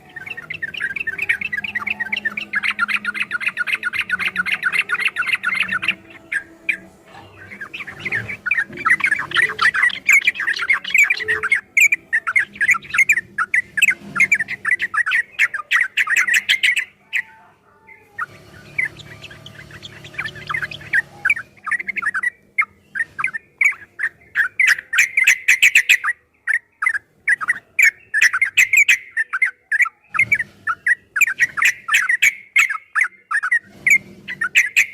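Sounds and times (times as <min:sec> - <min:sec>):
bird chattering song: 0:00.0 - 0:34.9.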